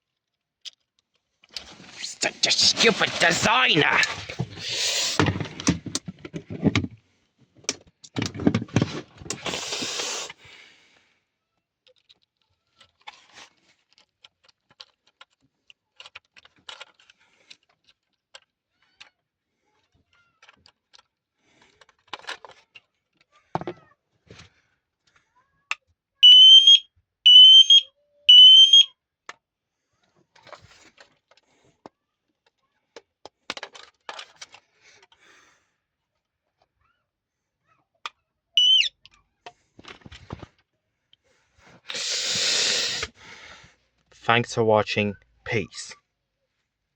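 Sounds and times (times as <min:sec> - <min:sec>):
smoke alarm shrill beeps: 0:26.2 - 0:28.9, 0:38.6 - 0:38.9.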